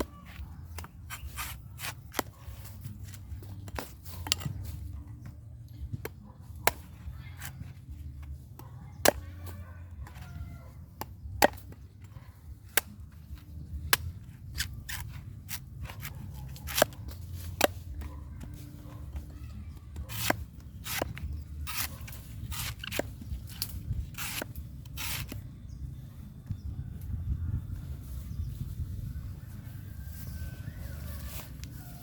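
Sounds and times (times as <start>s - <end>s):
knife chopping coconut: 6.0s - 7.8s, 9.0s - 10.2s, 11.0s - 13.0s, 13.9s - 18.5s, 19.9s - 25.4s.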